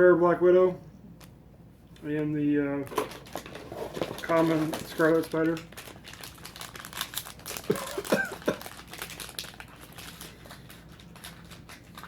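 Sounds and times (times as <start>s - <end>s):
foil wrappers crinkling: 2.9s - 12.0s.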